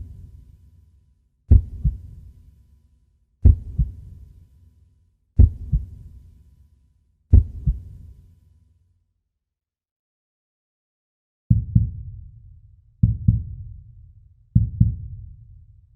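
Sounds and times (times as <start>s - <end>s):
heartbeat thumps: 1.5s - 2.2s, 3.4s - 4.1s, 5.4s - 6.0s, 7.3s - 8.0s, 11.5s - 12.1s, 13.0s - 13.8s, 14.5s - 15.3s.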